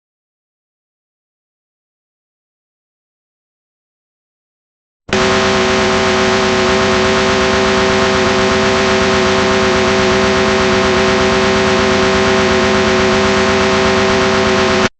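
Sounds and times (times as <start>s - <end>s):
buzzing hum: 5.1s - 14.9s.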